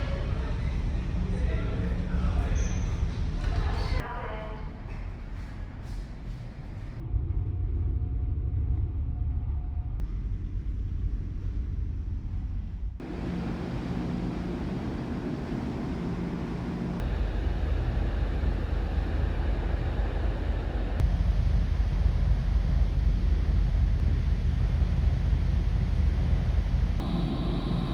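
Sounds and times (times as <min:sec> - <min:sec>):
ship engines rumbling: 0:13.0 - 0:27.9.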